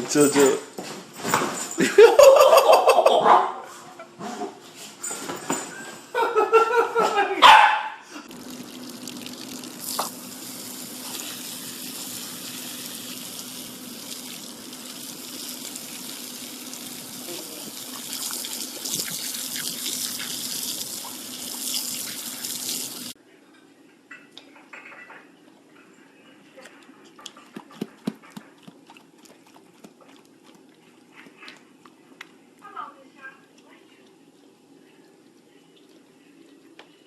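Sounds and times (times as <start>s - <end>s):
water running from tap: 8.3s - 23.2s
dog vocalizing loudly: 18.8s - 21.3s.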